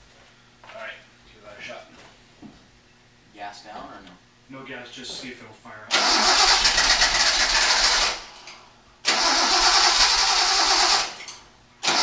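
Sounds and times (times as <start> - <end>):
car engine cranking on starter: 5.9 - 8.4, 9.1 - 11.2.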